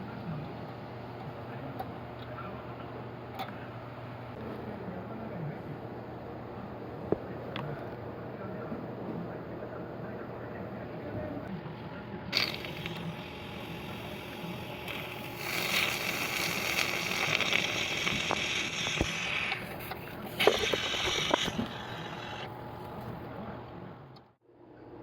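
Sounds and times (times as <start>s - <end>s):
mechanical hum: 0.0s - 25.0s
harsh hissing rasping noise: 12.4s - 22.5s.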